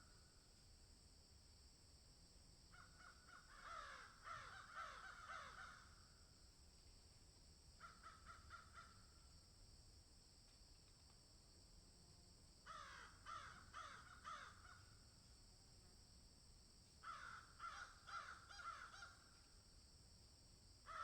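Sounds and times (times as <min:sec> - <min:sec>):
crows cawing: 0:02.7 - 0:06.0, 0:07.8 - 0:09.0, 0:12.7 - 0:14.9, 0:17.0 - 0:19.3.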